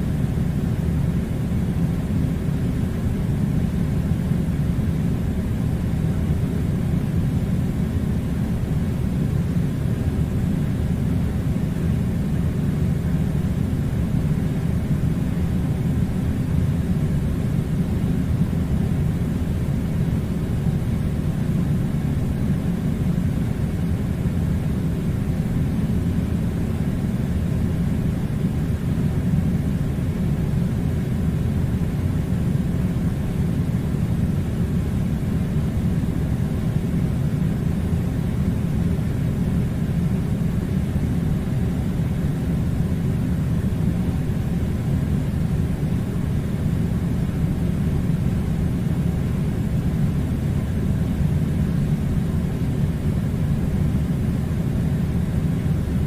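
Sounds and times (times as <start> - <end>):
air conditioner blowing air: 0.0 - 56.0.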